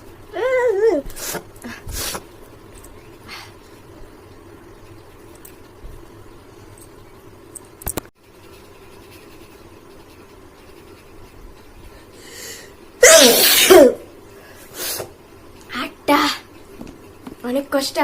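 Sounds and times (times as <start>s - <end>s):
woman sneezing: 13.0s - 14.0s.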